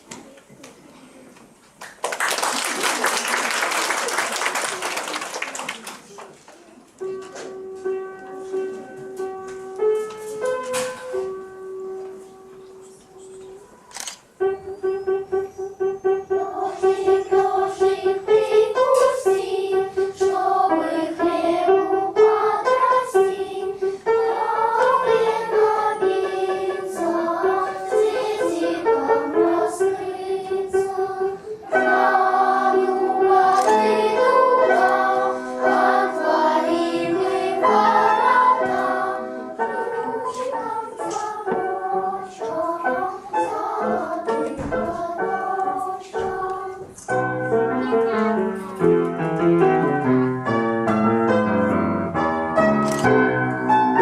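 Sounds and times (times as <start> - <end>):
voices singing a folk chant: 15.8 - 46.9.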